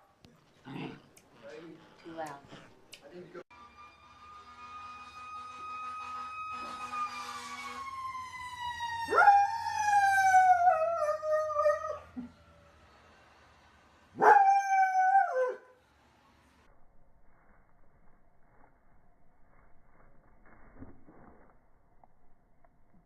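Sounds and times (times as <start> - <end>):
siren winding down: 3.5 - 12.9
dog howling: 9.1 - 12.2.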